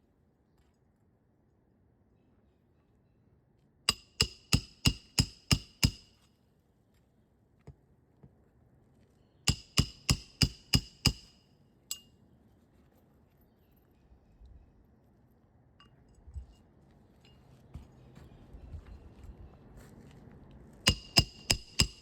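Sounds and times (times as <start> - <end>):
hammer striking metal: 3.9 - 6.1, 9.5 - 12.0, 20.9 - 22.0.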